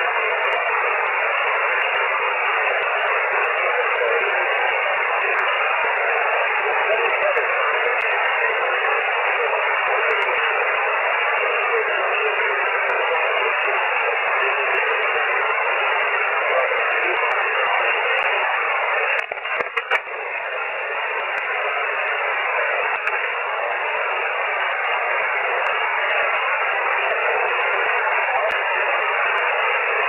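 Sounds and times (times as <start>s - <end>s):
radio static hiss: 0.0s - 30.0s
radio clicks: 12.6s - 13.7s, 15.6s - 20.4s, 22.7s - 23.5s, 28.1s - 30.0s.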